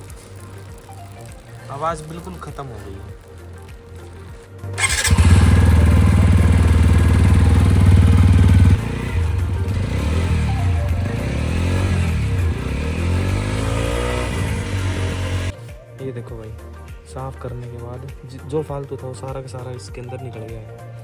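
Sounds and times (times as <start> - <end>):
motorcycle engine revving: 0.0 - 15.6.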